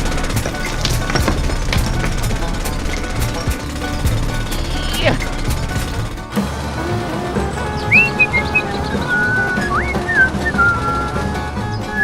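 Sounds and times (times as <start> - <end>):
background music: 0.0 - 12.0
rising whistle-like glide: 7.4 - 12.0.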